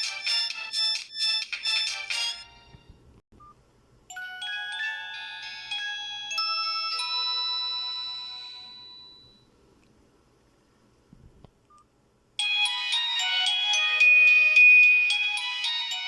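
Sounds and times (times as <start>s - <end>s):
fast melodic phone ringtone: 0.0s - 2.6s, 4.2s - 9.4s, 12.4s - 16.0s
chime-like phone ringtone: 0.0s - 2.7s, 4.1s - 9.5s, 12.4s - 16.0s.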